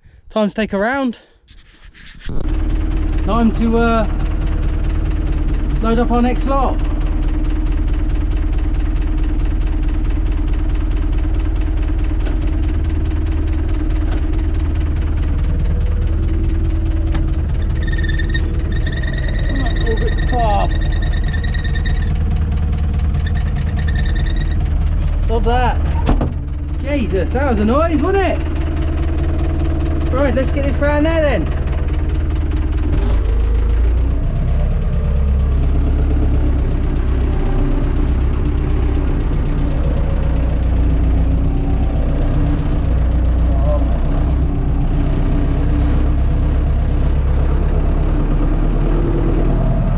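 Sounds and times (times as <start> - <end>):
tractor engine droning: 2.3 - 49.9
loud high-pitched squeal: 17.5 - 22.3, 23.2 - 24.7.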